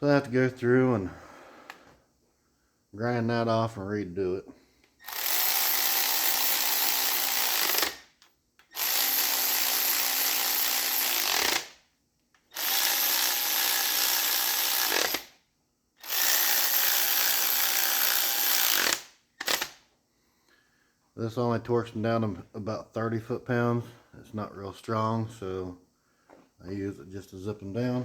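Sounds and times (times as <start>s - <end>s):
power tool running nuts down: 5.0s - 8.0s, 8.7s - 11.7s, 12.5s - 15.3s, 16.0s - 19.8s.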